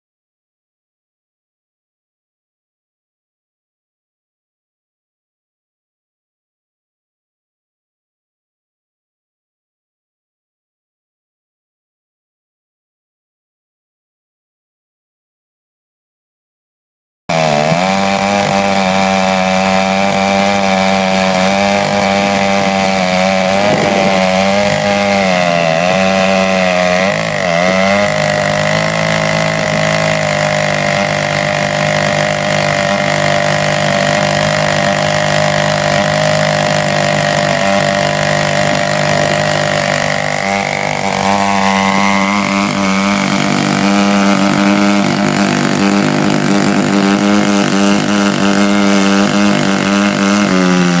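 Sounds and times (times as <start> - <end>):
chainsaw ripping a log: 17.3 - 51.0.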